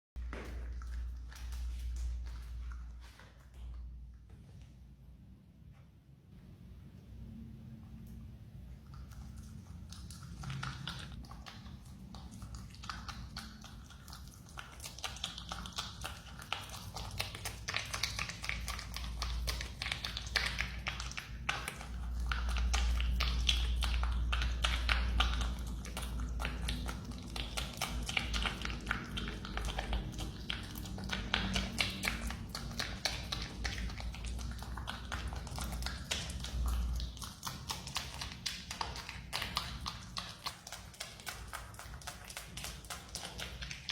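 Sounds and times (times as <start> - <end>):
animal chewing with mouth clicks: 0.2 - 4.7, 8.0 - 43.9
low hum: 0.2 - 13.8.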